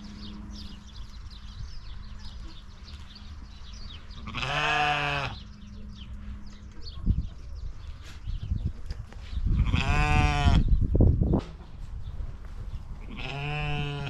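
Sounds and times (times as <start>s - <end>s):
sheep bleating: 4.2s - 5.4s, 9.6s - 10.6s, 13.1s - 14.0s.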